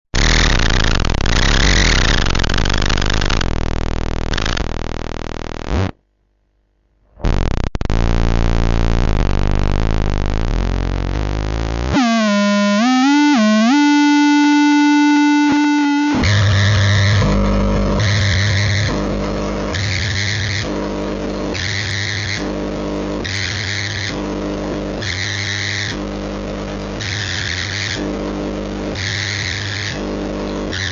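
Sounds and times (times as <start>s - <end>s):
harsh electronic buzzing: 0.1s - 6.0s, 7.0s - 30.9s
bending synthesizer tone: 7.2s - 21.2s.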